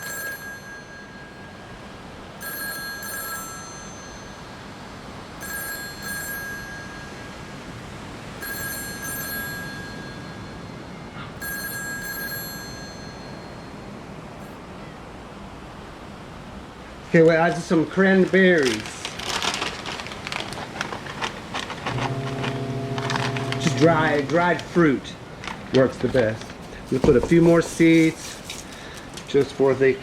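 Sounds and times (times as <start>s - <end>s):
telephone ringing: 0.0s - 1.8s, 2.4s - 4.6s, 5.4s - 7.7s, 8.3s - 14.6s, 21.9s - 24.5s
steady hiss: 26.1s - 30.0s.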